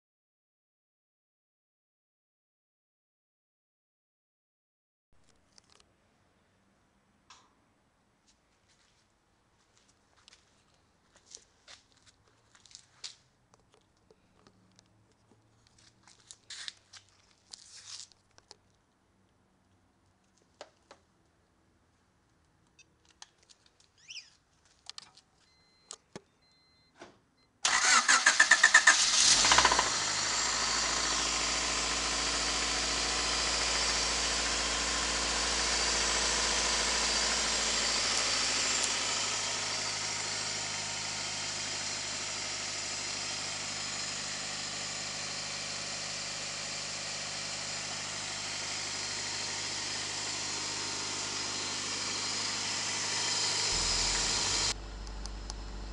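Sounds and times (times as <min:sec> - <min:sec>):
car engine cranking and idling: 0:27.6 - 0:55.9.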